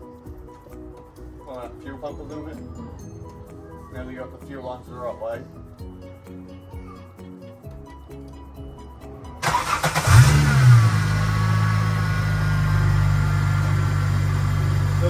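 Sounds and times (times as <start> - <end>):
background music: 0.0 - 15.0
car engine starting and idling: 9.4 - 15.0.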